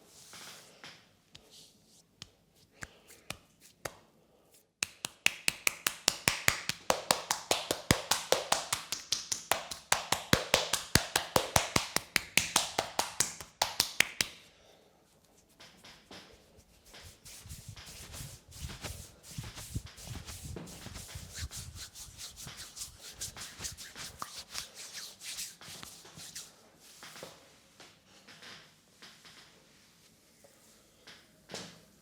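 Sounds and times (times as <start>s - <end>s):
massage slaps on the body: 4.8s - 14.4s, 16.9s - 27.3s.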